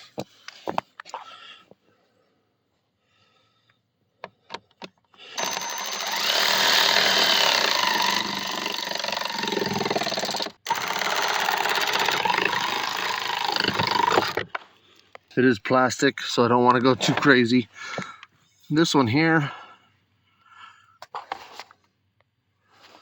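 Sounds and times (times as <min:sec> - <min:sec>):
power driver running: 0:05.4 - 0:14.5.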